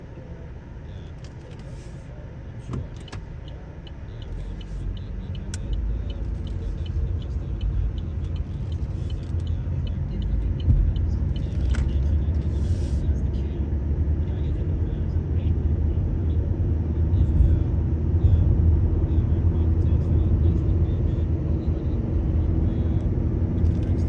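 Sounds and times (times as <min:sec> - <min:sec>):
car engine and road rumble: 0:00.0 - 0:24.0
light regular ticking: 0:03.0 - 0:12.0.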